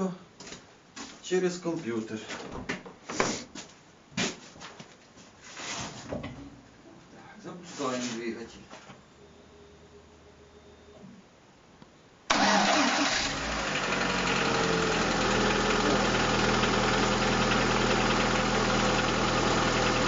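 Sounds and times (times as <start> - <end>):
car engine starting and idling: 12.3 - 20.0.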